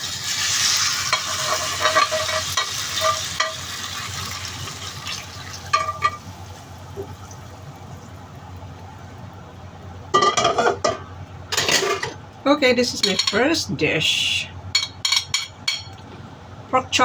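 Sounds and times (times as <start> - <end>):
food sizzling in a pan: 0.0 - 8.5
metal spatula scraping a pan: 0.9 - 3.7.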